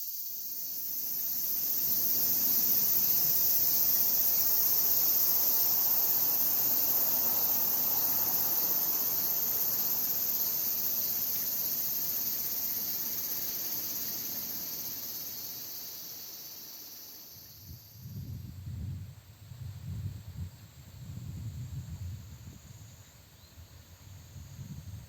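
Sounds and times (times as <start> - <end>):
insects shrilling: 0.0 - 18.0.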